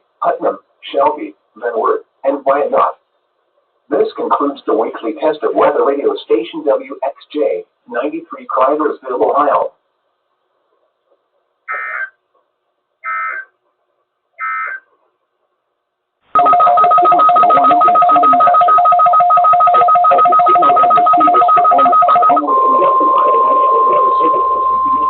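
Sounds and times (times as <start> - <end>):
digital data bursts: 16.4 - 25.0
two-note warning alarm tone: 16.4 - 25.0.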